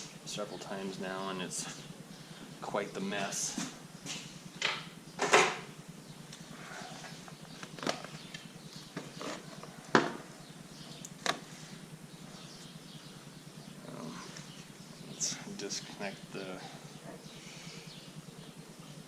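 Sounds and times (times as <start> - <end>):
sharp clicks and knocks: 4.6 - 5.7.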